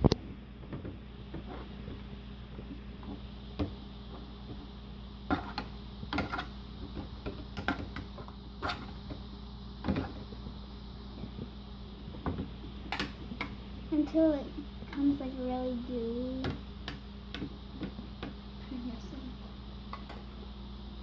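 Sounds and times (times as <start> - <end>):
steady low hum: 0.0 - 21.0
utensil scraping a bowl: 8.6 - 9.0.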